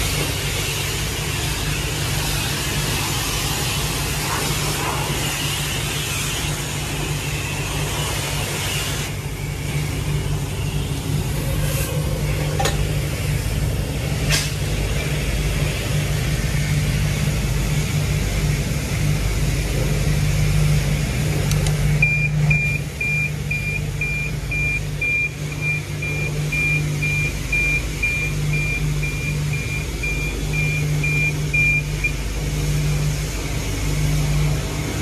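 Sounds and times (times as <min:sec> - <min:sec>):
low machine hum: 0:00.0 - 0:35.0
high electronic beep: 0:22.0 - 0:32.2.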